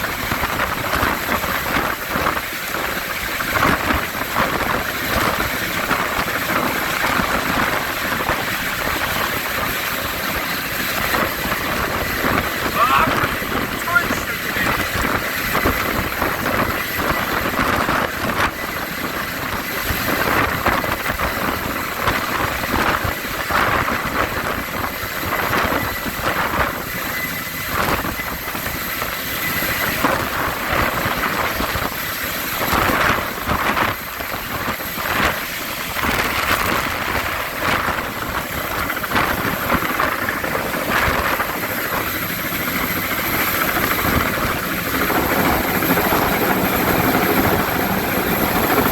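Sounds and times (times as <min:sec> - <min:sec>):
helicopter rotor and engine noise: 0:00.0 - 0:48.9.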